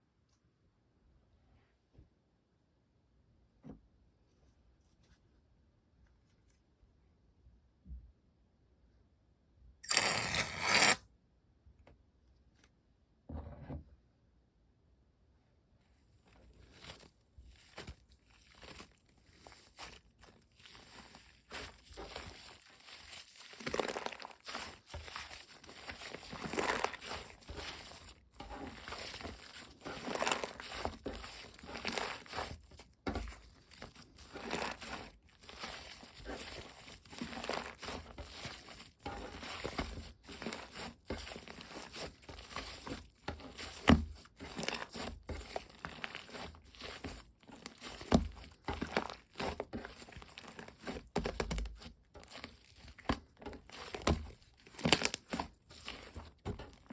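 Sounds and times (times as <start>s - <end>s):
slime squelching and crackling: 16.4s - 56.9s.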